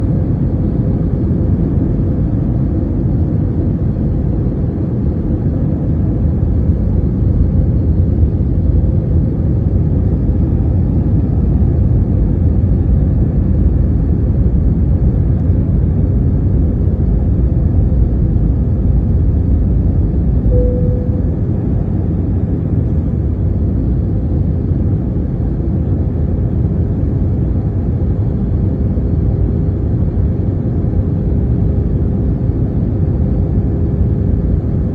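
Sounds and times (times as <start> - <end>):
airliner cabin engine rumble: 0.0 - 34.9
short cabin tone: 20.4 - 22.6.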